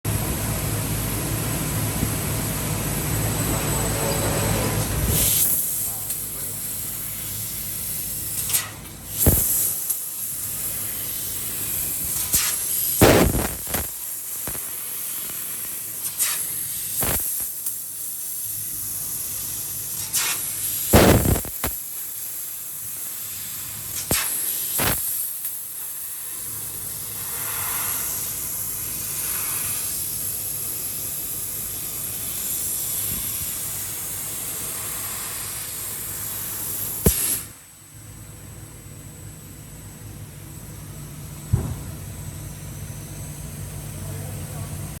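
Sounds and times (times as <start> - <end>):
cnc machine hiss and hum: 0.1 - 45.0
short sharp bursts: 12.1 - 14.8, 20.0 - 21.9.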